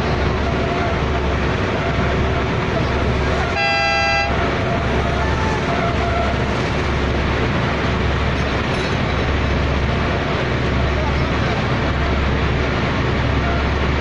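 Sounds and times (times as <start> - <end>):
boat engines rumbling: 0.0 - 14.0
horn blast: 3.3 - 6.7.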